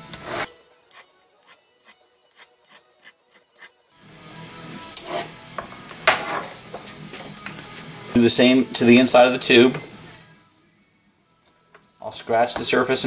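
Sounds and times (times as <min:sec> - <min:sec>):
hand file rasping on metal: 0:00.0 - 0:03.8, 0:05.0 - 0:05.4.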